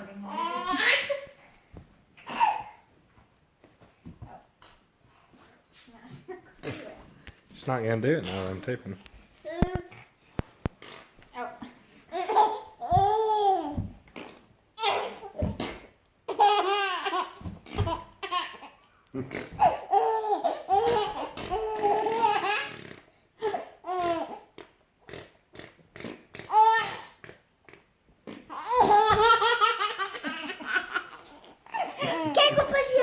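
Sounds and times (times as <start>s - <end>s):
fart noises: 9.5s - 11.5s, 12.9s - 14.6s, 15.3s - 16.0s, 17.4s - 18.2s, 19.1s - 19.8s, 20.7s - 23.2s, 23.9s - 29.4s
baby laughing: 16.3s - 18.7s, 19.4s - 22.8s, 28.5s - 33.0s.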